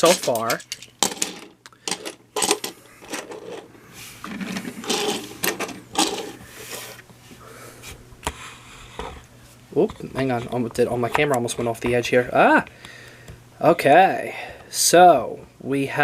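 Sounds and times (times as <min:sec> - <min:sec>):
plastic toy train clicking and rattling: 0:04.3 - 0:06.4.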